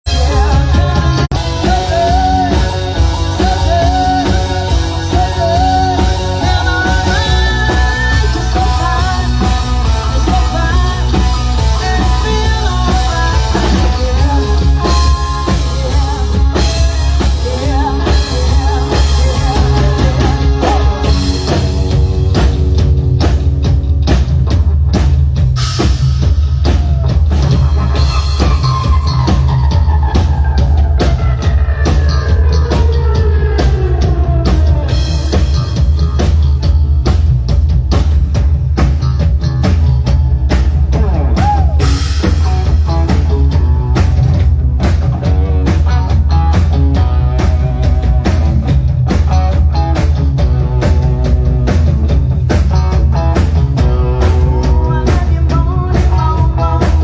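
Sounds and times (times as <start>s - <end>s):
person singing: 0.0s - 22.6s, 26.6s - 36.7s, 39.6s - 44.1s, 52.5s - 57.0s
heavy bass line: 0.0s - 57.0s
rock drums: 0.0s - 57.0s.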